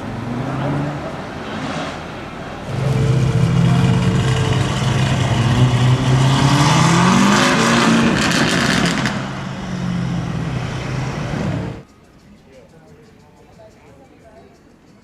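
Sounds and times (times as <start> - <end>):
exhaust crackles: 0.0 - 11.8
loud car engine revving: 0.0 - 11.8.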